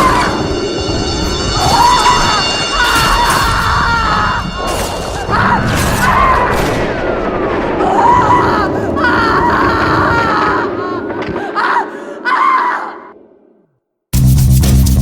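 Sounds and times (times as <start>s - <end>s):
woman crying and screaming: 0.0s - 0.5s, 1.6s - 6.7s, 7.8s - 13.1s
dramatic music: 0.0s - 7.4s, 14.2s - 15.0s
alarm wail: 0.0s - 11.1s.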